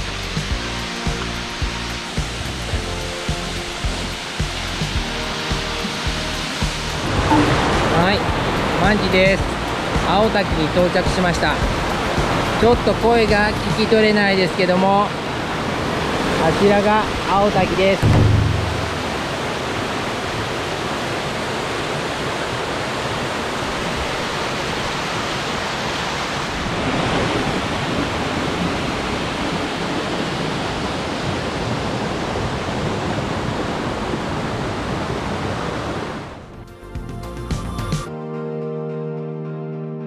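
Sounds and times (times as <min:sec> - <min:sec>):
soft music: 0:00.0 - 0:14.2, 0:17.8 - 0:19.4, 0:36.5 - 0:40.0
waterfall rushing: 0:00.0 - 0:36.2.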